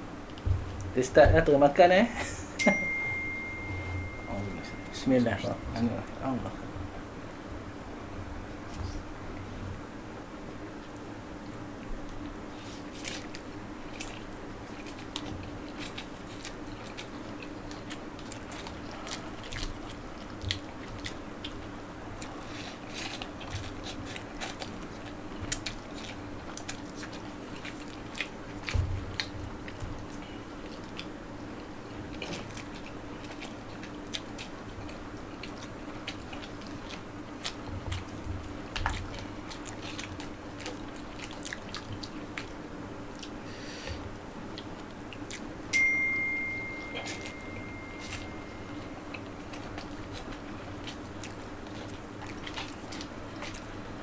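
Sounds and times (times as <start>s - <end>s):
low hum: 2.1s - 9.0s, 45.8s - 49.8s
chewing and crunching noodles: 10.7s - 43.4s, 47.0s - 54.0s.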